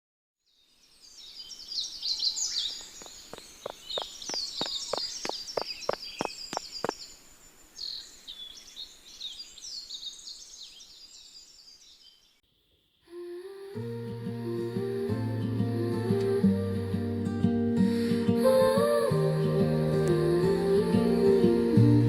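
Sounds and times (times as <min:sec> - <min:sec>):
birds singing and chirping: 0:00.8 - 0:12.4
sharp taps: 0:02.9 - 0:07.0.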